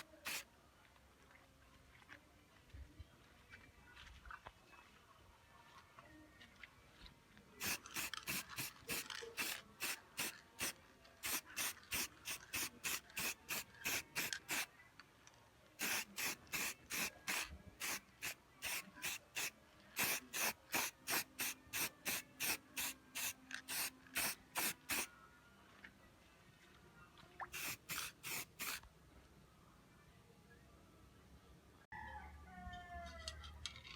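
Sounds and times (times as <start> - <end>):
spray paint hissing: 0.0 - 0.4, 7.6 - 14.7, 15.8 - 25.1, 27.5 - 28.8.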